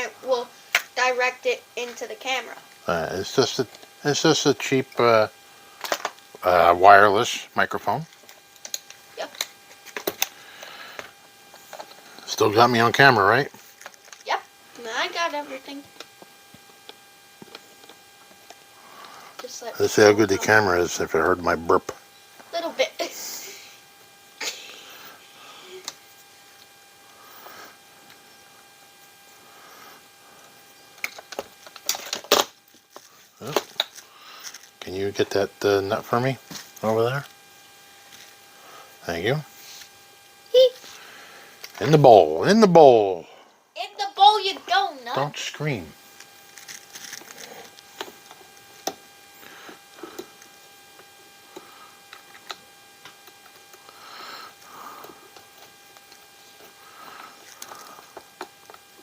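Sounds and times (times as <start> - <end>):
faint steady hum: 0.0 - 59.0
small parts and tools clattering: 31.0 - 34.8.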